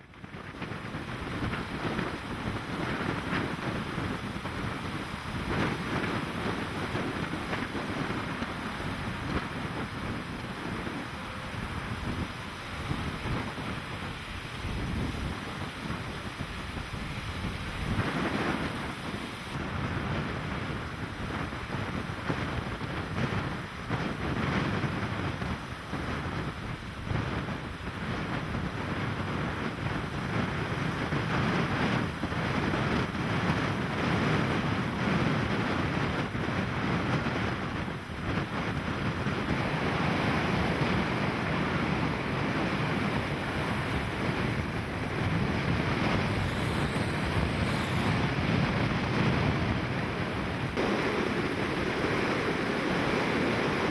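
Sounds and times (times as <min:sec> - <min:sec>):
wind: 0:00.0 - 0:53.9
wind buffeting microphone: 0:00.0 - 0:53.9
breaking waves: 0:37.7 - 0:53.9.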